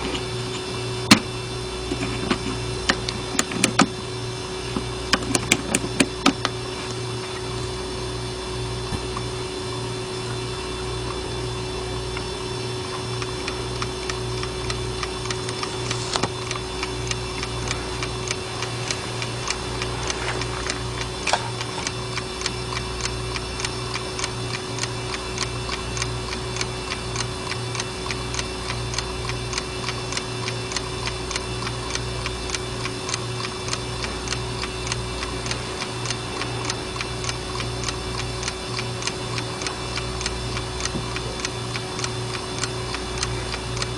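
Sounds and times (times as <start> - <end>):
steady hum: 0.0 - 43.9
alarm clock ticking: 13.2 - 43.9.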